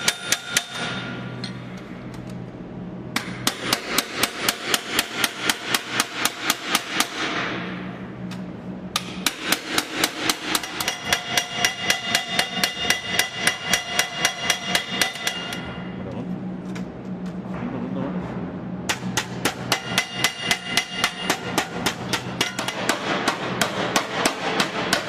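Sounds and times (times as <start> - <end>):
hammer beating on metal: 8.9 - 15.7, 18.9 - 25.0.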